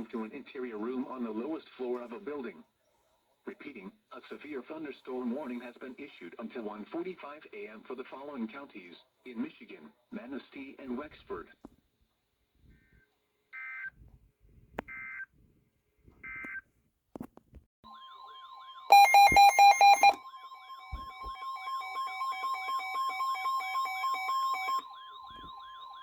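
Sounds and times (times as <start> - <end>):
steady alert tone: 18.9 - 20.2
short data bursts: 18.9 - 26.0
warbling siren-like wail: 19.0 - 26.0.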